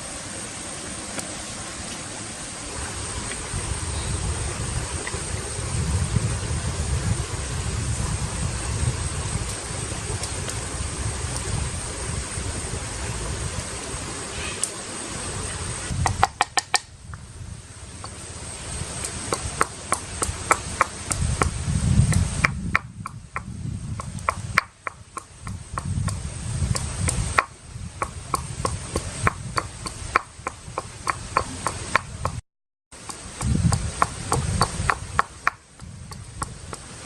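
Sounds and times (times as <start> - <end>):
sharp clicks and knocks: 16.0 - 16.9.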